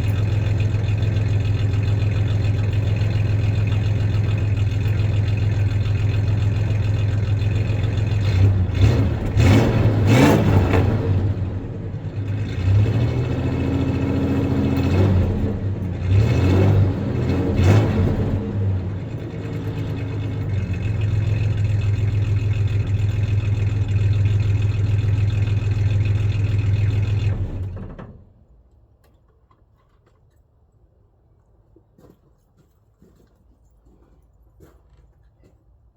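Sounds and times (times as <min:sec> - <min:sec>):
engine revving: 0:00.0 - 0:28.0
car engine idling with misfire: 0:00.0 - 0:28.2.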